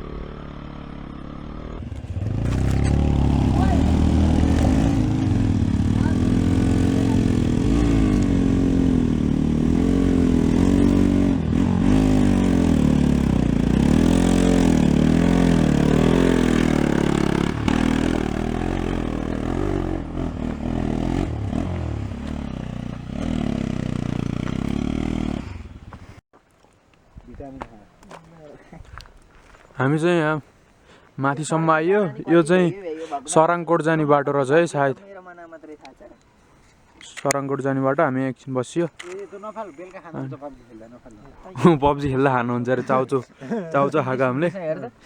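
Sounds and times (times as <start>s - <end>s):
motorcycle engine revving: 0.0s - 26.2s.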